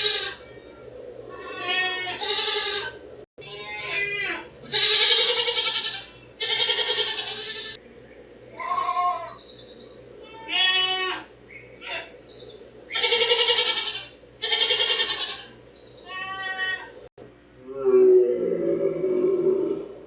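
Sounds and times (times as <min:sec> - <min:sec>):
goat bleating: 0:00.0 - 0:00.4, 0:01.3 - 0:07.8, 0:08.6 - 0:09.3, 0:10.2 - 0:12.1, 0:12.9 - 0:16.9.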